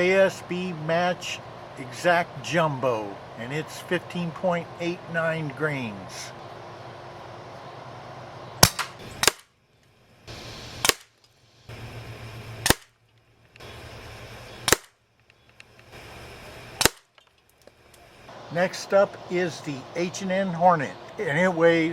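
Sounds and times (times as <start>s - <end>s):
low steady hum: 0.0s - 21.9s
air rifle shots: 8.6s - 9.5s, 10.3s - 11.2s, 12.6s - 13.0s, 14.6s - 15.0s, 16.8s - 17.1s.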